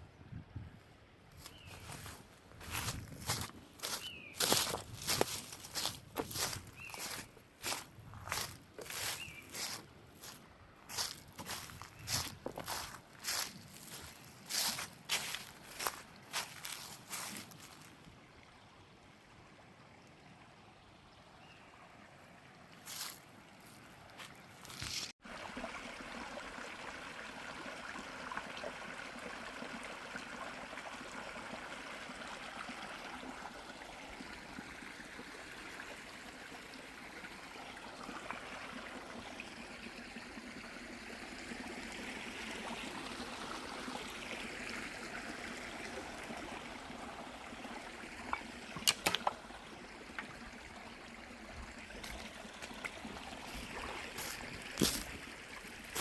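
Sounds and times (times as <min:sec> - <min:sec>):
stream water trickling: 0:01.3 - 0:56.0
sharp clicks or knocks: 0:48.8 - 0:49.4.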